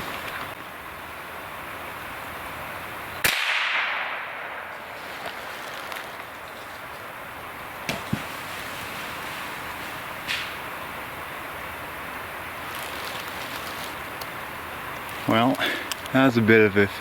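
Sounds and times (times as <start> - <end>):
steady hiss: 0.0 - 17.0
rifle shot: 3.2 - 4.8
faint clicks: 14.9 - 16.2.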